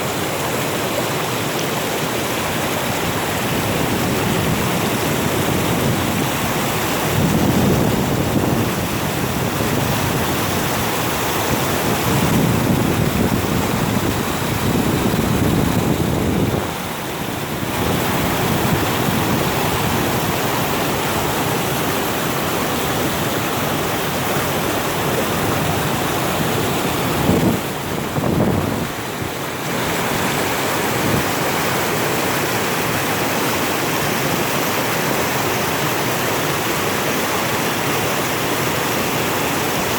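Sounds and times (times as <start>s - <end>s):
stream water rushing: 0.0s - 39.9s
wind buffeting microphone: 2.8s - 32.3s.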